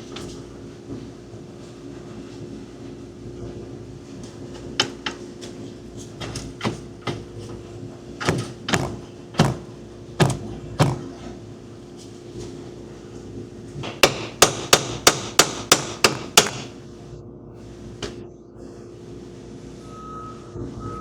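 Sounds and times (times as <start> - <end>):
tools knocking against metal: 8.2 - 11.2, 14.0 - 16.7.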